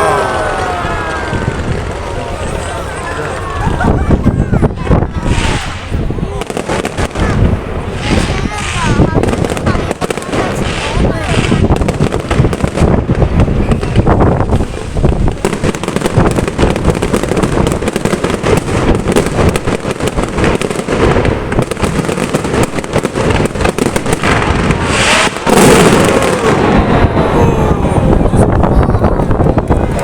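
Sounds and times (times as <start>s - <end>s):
fireworks bangs and crackles: 0.0s - 30.0s
whistling firework glides: 22.1s - 30.0s.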